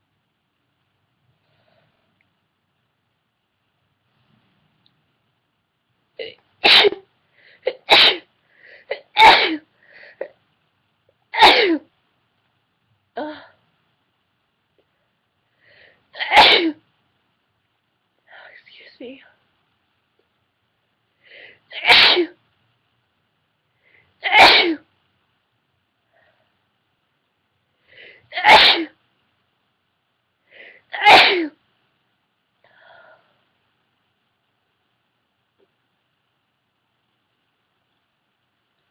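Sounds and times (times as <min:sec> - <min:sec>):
woman sneezing: 0:06.2 - 0:07.0, 0:07.6 - 0:08.2, 0:08.9 - 0:09.6, 0:16.2 - 0:16.8, 0:21.7 - 0:22.4, 0:24.2 - 0:24.8, 0:28.3 - 0:29.0, 0:31.0 - 0:31.6
woman catching breath: 0:08.5 - 0:09.0, 0:09.8 - 0:10.3, 0:21.2 - 0:21.6, 0:27.8 - 0:28.3, 0:30.5 - 0:30.9, 0:32.6 - 0:33.4.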